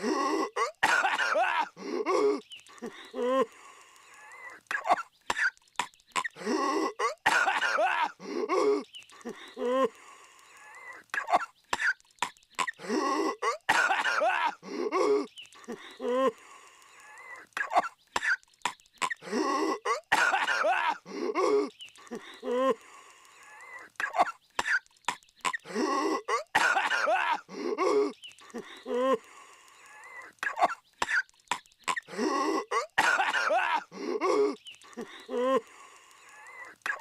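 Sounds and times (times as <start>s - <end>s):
cartoon voice coughing violently: 0.0s - 2.4s, 6.2s - 8.8s, 12.6s - 15.3s, 19.0s - 21.7s, 25.5s - 28.2s, 31.9s - 34.6s
wheezy gasps: 0.0s - 37.0s.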